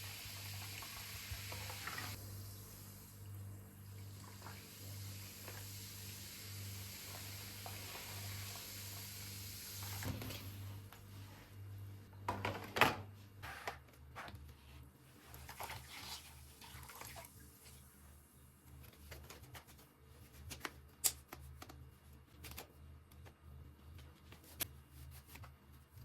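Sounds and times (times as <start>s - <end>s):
low steady hum: 0.0s - 19.2s.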